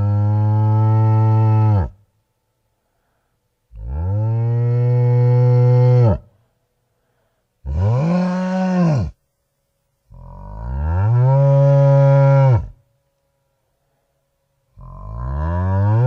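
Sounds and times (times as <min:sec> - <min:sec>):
cow mooing: 0:07.7 - 0:09.2, 0:10.1 - 0:12.8, 0:14.8 - 0:16.0.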